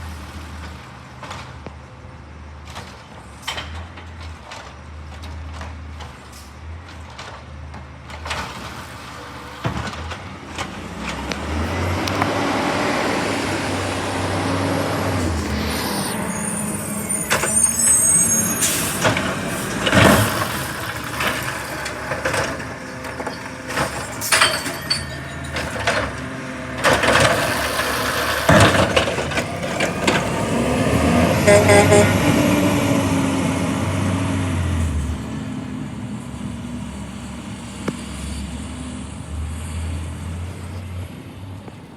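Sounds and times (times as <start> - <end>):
truck diesel engine running: 5.4 - 41.7
recyclables clattering and banging: 18.8 - 30.5
horn toots: 31.3 - 32.4.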